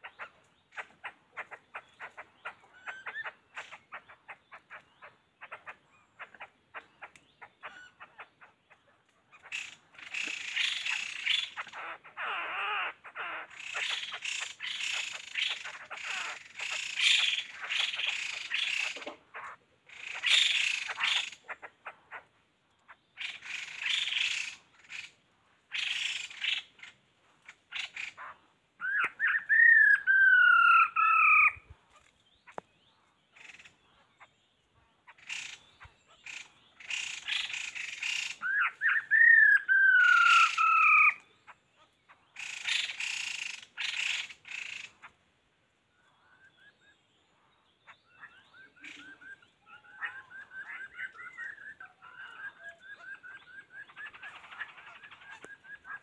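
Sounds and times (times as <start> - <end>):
harsh bird chattering: 0.0 - 45.2, 46.0 - 56.0
descending whistled bird call: 28.8 - 31.7, 35.3 - 41.3, 47.9 - 56.0.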